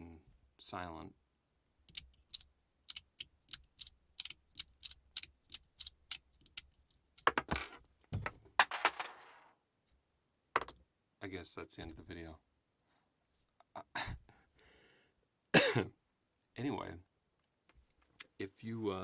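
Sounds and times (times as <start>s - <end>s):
magnetic slider fidget clicking: 1.9s - 7.4s.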